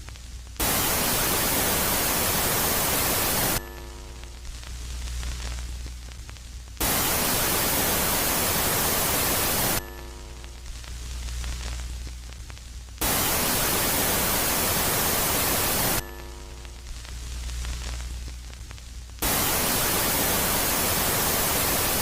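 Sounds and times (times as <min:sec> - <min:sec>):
static-like hiss: 0:00.0 - 0:22.0
low hum: 0:03.4 - 0:19.7.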